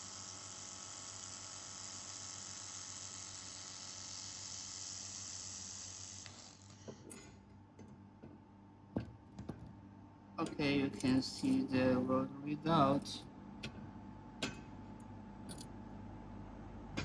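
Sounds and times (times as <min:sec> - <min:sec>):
welder sizzling hiss: 0:00.0 - 0:07.0
low machine hum: 0:06.4 - 0:17.0.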